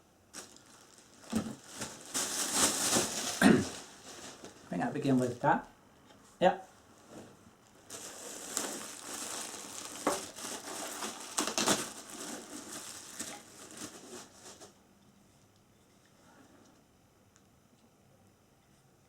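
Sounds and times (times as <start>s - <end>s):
packaging crinkling: 0.3s - 5.4s, 6.9s - 14.8s.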